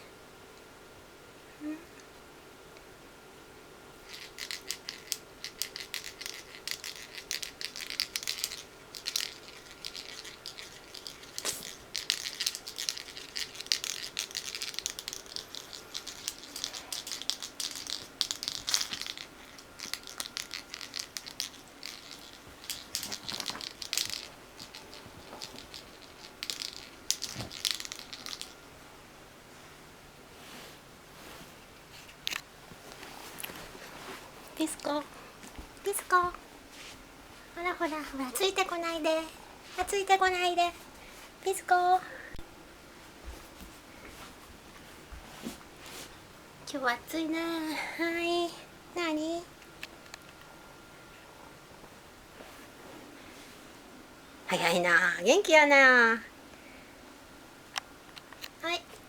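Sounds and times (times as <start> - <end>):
kitten crunching dry food: 4.0 - 28.6.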